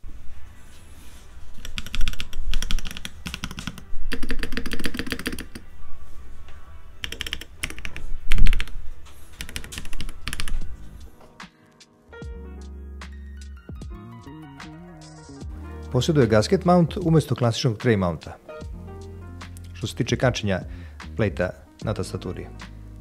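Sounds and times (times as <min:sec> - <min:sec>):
background music: 0:00.0 - 0:23.0
mechanical keyboard typing: 0:01.6 - 0:05.6, 0:07.0 - 0:08.8, 0:09.4 - 0:10.7.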